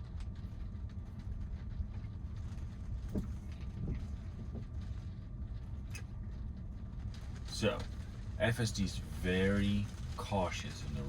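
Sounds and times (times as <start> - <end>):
tyres rumbling on wet road: 7.2 - 11.0.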